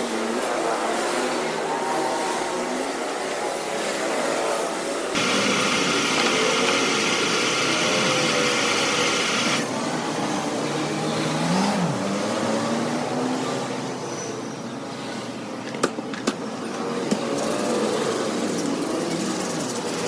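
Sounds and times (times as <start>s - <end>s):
small electric motor hissing: 5.2s - 9.6s.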